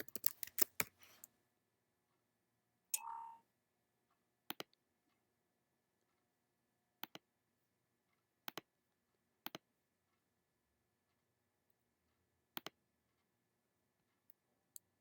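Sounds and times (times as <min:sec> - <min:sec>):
mouse button clicking: 0:03.0 - 0:03.4
short tone: 0:03.0 - 0:03.4.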